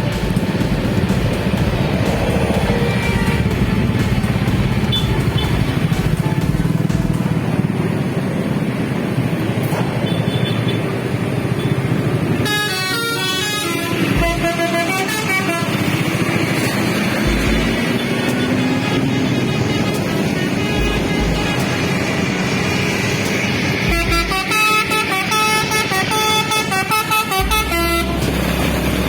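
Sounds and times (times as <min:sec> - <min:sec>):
musical bus horn: 0:00.0 - 0:08.7, 0:09.6 - 0:29.0
bus engines and tyres rumbling: 0:00.0 - 0:29.0.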